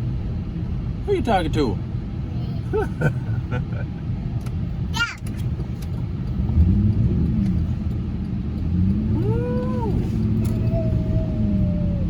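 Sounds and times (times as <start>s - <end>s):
car rumbling through snow: 0.0s - 12.0s
rising and falling hum: 6.4s - 12.0s.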